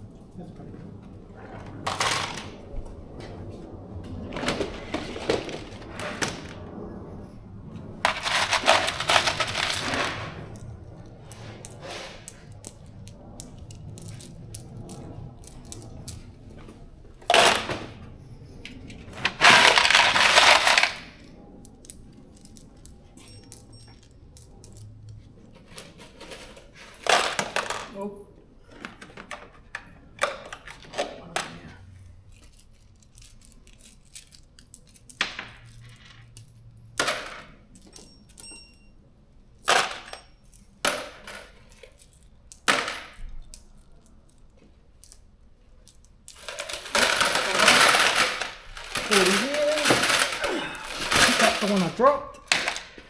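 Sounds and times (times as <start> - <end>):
metal bolts clinking: 19.4 - 28.0, 32.0 - 38.9.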